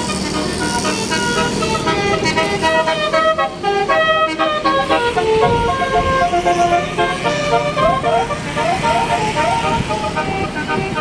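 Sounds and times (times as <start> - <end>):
multi-trumpet air horn melody: 0.0 - 11.0.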